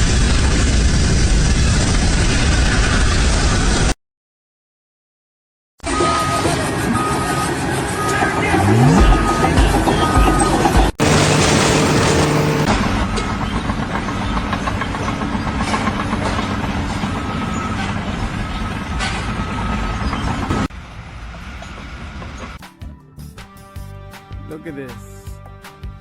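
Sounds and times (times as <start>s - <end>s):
heavy machinery engine noise: 6.6s - 22.5s.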